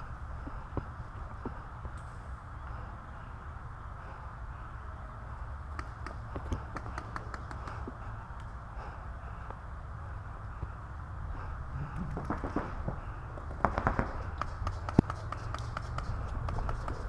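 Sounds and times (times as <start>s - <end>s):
steady outdoor rumble: 0.0s - 17.0s
paintball markers firing: 12.0s - 17.0s.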